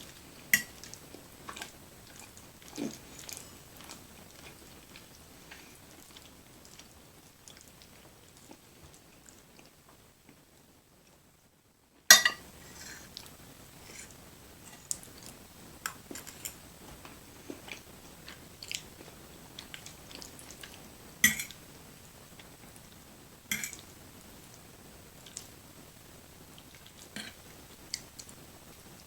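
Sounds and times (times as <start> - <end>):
wet chewing and mouth smacks: 0.7 - 9.8, 17.1 - 21.5.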